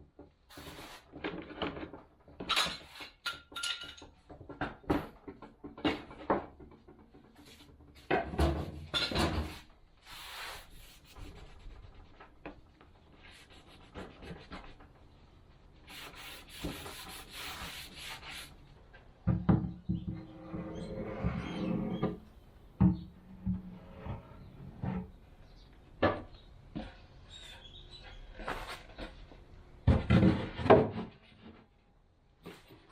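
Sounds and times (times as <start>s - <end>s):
wood scraping: 19.9s - 25.6s.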